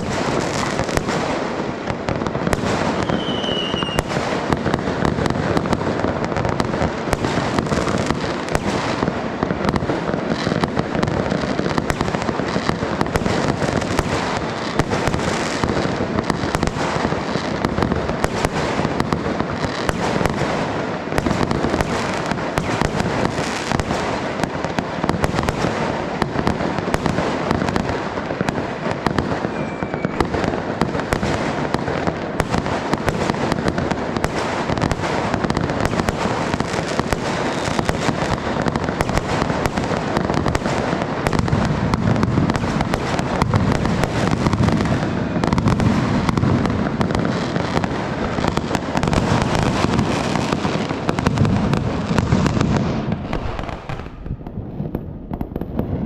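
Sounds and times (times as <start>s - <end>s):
fireworks bangs and pops: 0.0s - 56.0s
firework whistle: 2.5s - 4.4s, 29.2s - 30.5s.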